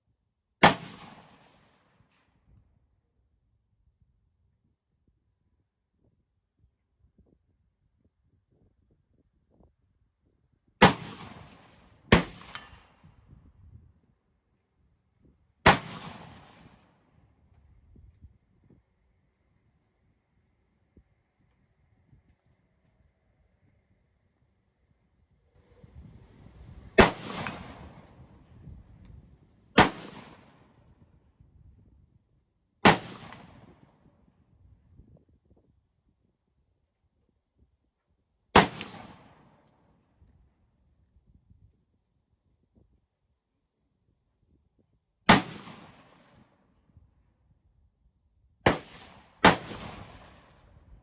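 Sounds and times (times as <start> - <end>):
gunshots with rolling echo: 10.8 - 13.0, 15.6 - 16.8, 26.9 - 28.5, 29.8 - 30.6, 32.8 - 33.8, 38.6 - 39.4, 45.3 - 46.2, 48.7 - 50.6.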